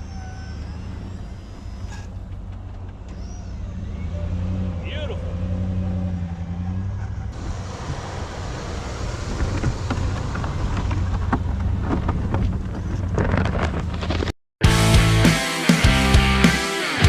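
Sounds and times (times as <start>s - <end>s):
snowplow engine running: 0.0s - 14.1s
knocks and rattles: 9.2s - 14.3s
rock music: 14.6s - 17.0s.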